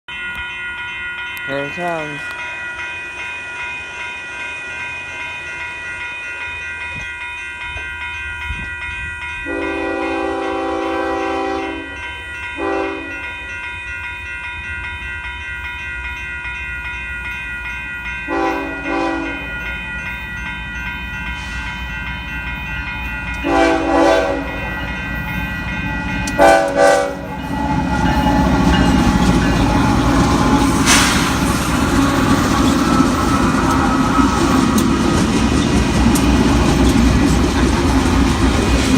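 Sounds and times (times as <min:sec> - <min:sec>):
passing train rumble: 0:00.1 - 0:38.9
locomotive air horn blasts: 0:09.5 - 0:12.0, 0:12.6 - 0:13.2, 0:18.3 - 0:19.5, 0:23.4 - 0:24.7, 0:26.4 - 0:28.2.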